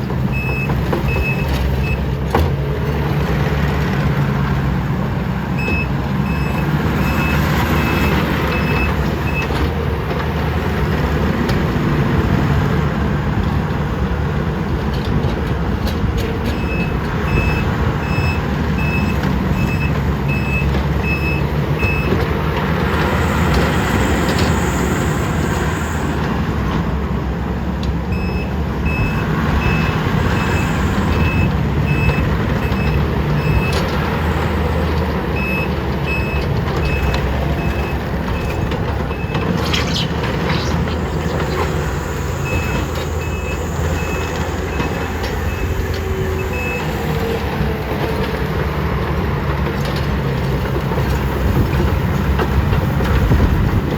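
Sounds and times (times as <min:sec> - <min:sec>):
diesel engines running hard: 0:00.0 - 0:53.9
backup alarm beeping: 0:16.6 - 0:22.3, 0:28.1 - 0:33.8, 0:40.9 - 0:47.1.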